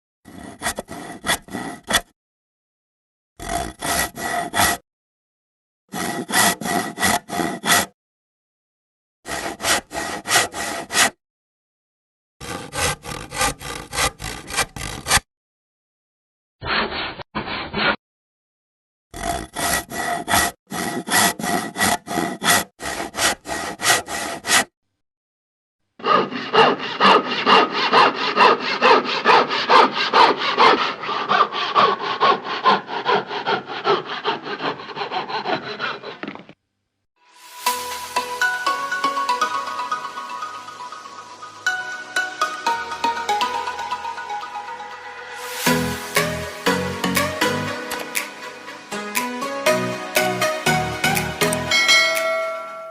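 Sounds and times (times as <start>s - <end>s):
hand saw cutting wood: 0.3s - 2.2s, 3.4s - 4.8s, 5.9s - 8.0s, 9.2s - 11.2s, 12.4s - 15.3s, 16.6s - 18.0s, 19.2s - 24.8s, 26.0s - 36.6s, 45.5s - 52.3s.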